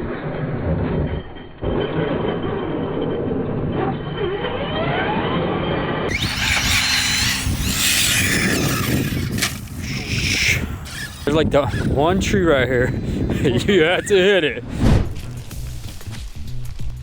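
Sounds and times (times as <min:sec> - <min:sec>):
electric motor whining: 0:06.1 - 0:14.5
tyres and running gear noise: 0:06.1 - 0:14.8.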